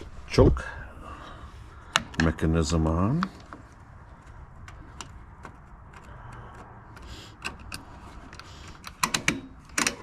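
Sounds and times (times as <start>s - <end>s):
choke mechanism clicks and knocks: 4.2s - 10.0s.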